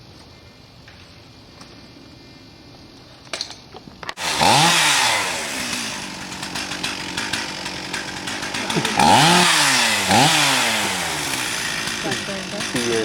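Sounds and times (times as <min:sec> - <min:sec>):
chainsaw revving: 0:04.2 - 0:13.0.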